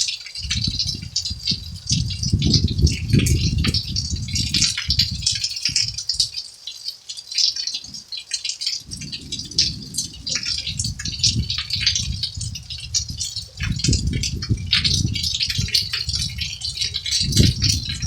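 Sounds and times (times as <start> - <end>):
rain ticking on hard surface: 0.0 - 18.0
low drumming: 8.8 - 18.0.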